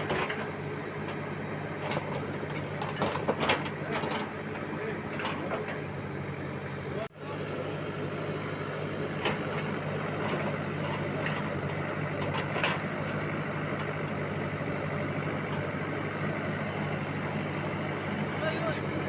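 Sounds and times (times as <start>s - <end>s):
diesel engine idling: 0.0s - 19.0s
short metal clanks: 1.8s - 4.4s.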